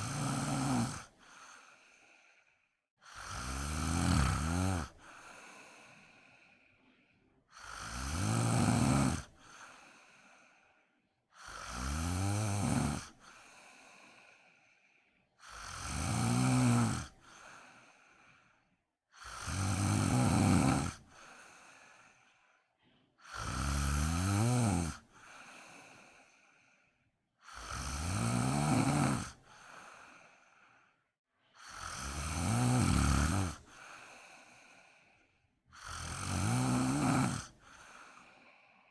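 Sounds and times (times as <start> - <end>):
person snoring loudly: 0.0 - 2.4, 3.0 - 6.6, 7.5 - 10.5, 11.3 - 14.7, 15.4 - 18.3, 19.1 - 22.2, 23.2 - 30.7, 31.6 - 38.8
soft breath out: 0.9 - 3.2, 4.9 - 7.5, 9.3 - 11.1, 13.1 - 15.3, 21.0 - 23.4, 24.9 - 27.1, 29.3 - 31.7, 33.5 - 35.9, 37.4 - 38.9.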